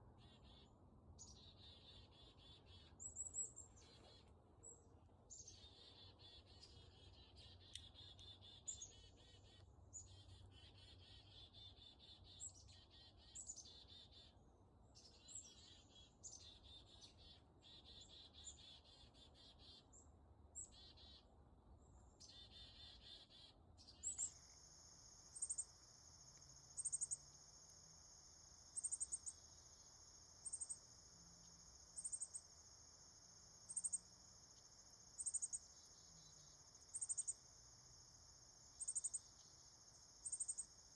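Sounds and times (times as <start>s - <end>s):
cricket chirps: 0.0s - 4.2s, 5.3s - 14.4s, 22.2s - 40.9s
songbird singing: 0.0s - 40.9s
insect trill: 24.0s - 40.9s.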